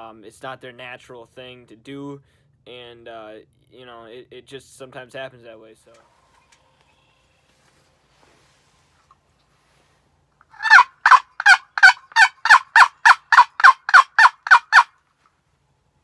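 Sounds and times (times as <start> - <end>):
turkey call yelping: 10.6 - 14.9.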